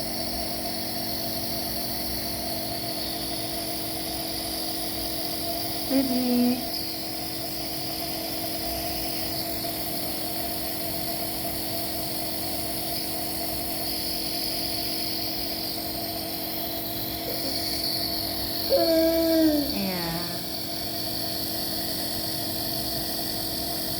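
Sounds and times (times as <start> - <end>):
nebulizer compressor humming: 0.0 - 23.9
short voice sound: 18.7 - 20.6.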